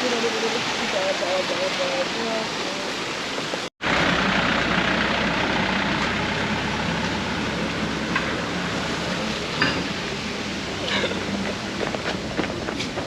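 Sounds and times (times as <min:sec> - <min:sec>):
road noise: 0:00.0 - 0:13.0
bus engine hum: 0:03.2 - 0:13.0.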